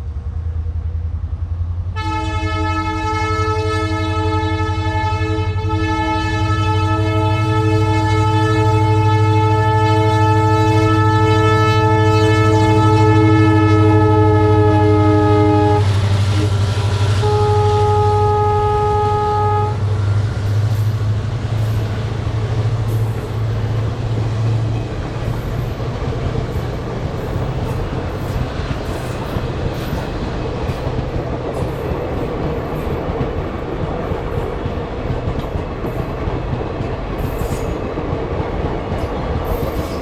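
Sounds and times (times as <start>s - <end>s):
locomotive air horn blasts: 2.0s - 20.0s
train wheels rolling on rails: 19.8s - 40.0s.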